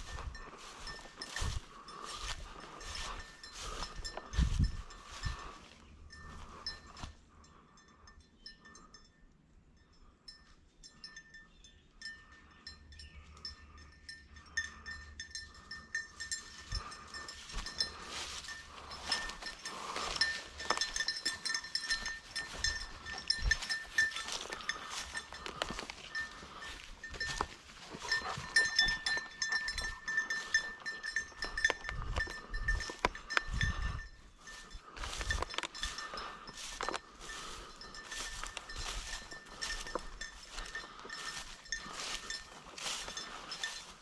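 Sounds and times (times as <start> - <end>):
rustling through brush: 0.0 - 7.1, 16.4 - 44.0
small bell jingling: 0.0 - 44.0.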